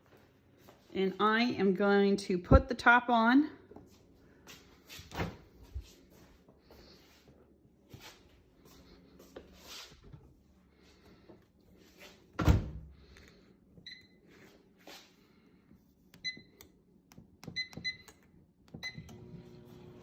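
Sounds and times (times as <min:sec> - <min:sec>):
microwave humming: 0:16.0 - 0:20.0
keypad beeps: 0:16.2 - 0:16.6, 0:17.4 - 0:18.2, 0:18.8 - 0:19.2.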